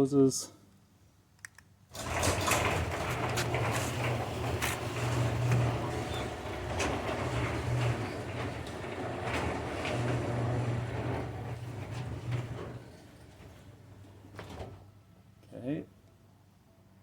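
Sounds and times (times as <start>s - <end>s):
garage door opener motor hum: 1.9s - 14.8s
garage door clicks and rattles: 1.9s - 15.0s.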